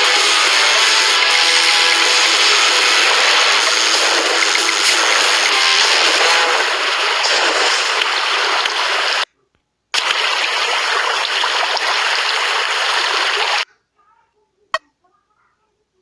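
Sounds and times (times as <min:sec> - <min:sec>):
water flowing: 0:00.0 - 0:09.2, 0:10.0 - 0:13.6.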